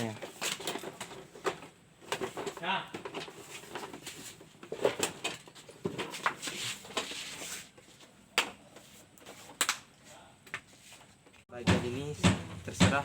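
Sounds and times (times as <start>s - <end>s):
sharp knocks: 11.6s - 13.0s.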